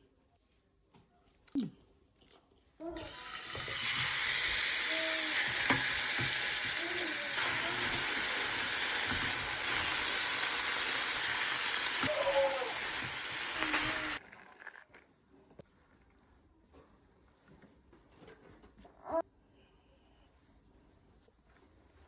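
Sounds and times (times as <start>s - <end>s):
food sizzling in a frying pan: 3.0s - 14.2s.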